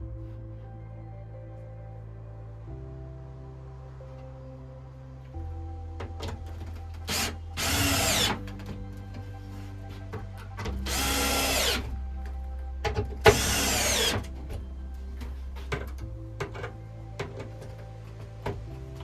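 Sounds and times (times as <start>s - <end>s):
background music: 0.0s - 19.0s
power drill motor whine: 7.0s - 8.5s, 10.9s - 11.9s, 13.3s - 14.3s.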